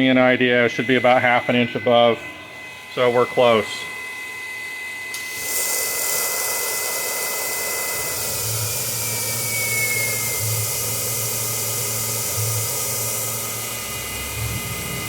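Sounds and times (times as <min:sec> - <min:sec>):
coolant mister hissing: 0:00.0 - 0:15.0
high spindle whine: 0:00.0 - 0:15.0
low hum: 0:08.0 - 0:15.0.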